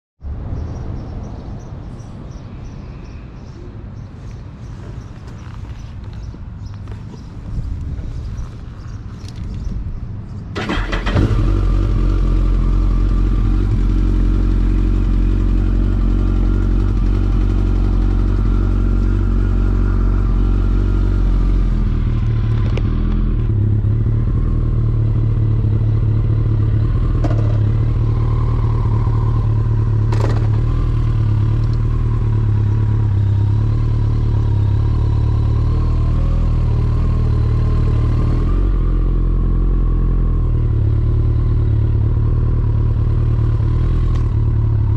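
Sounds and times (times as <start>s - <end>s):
motorcycle engine idling: 10.6s - 44.9s.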